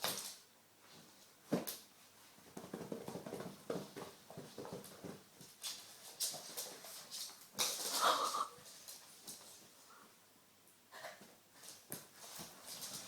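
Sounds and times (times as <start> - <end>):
puppy scuffles: 0.0 - 9.8, 11.1 - 13.0
puppy noises: 7.9 - 8.6.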